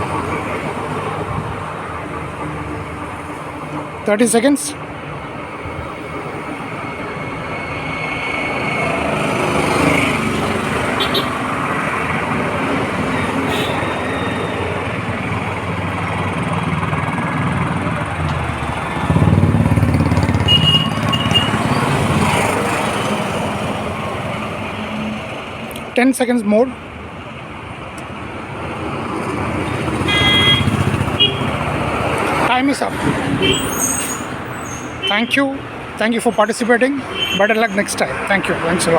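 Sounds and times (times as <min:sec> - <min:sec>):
passing vehicles rumble: 0:00.0 - 0:38.9.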